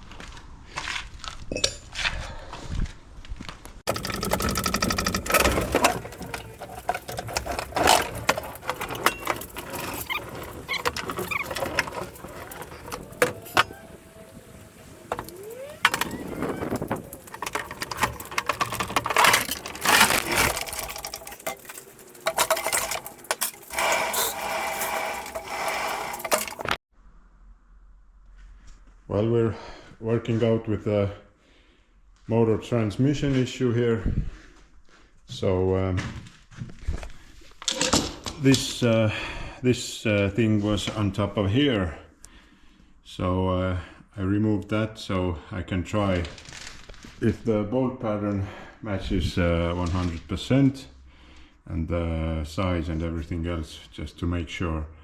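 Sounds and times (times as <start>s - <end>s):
fast mechanical rattling: 3.9s - 26.8s
metal tools clanking: 3.9s - 26.8s.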